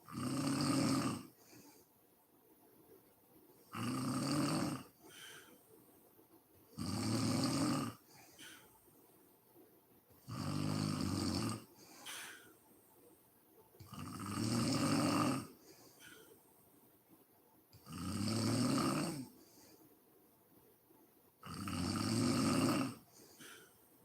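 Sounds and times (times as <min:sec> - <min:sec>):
faint breaths: 0:00.0 - 0:03.8, 0:04.4 - 0:10.3, 0:11.0 - 0:14.2, 0:14.8 - 0:17.9, 0:19.0 - 0:21.4, 0:22.6 - 0:24.0
woman snoring: 0:00.1 - 0:01.4, 0:03.7 - 0:05.4, 0:06.8 - 0:08.6, 0:10.2 - 0:12.5, 0:13.8 - 0:16.2, 0:17.8 - 0:19.5, 0:21.4 - 0:23.7.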